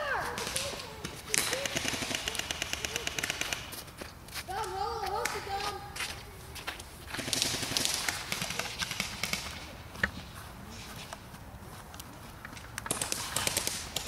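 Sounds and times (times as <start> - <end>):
sharp clicks: 0.4 - 3.8, 11.9 - 14.0
footsteps through dry brush: 3.8 - 13.4.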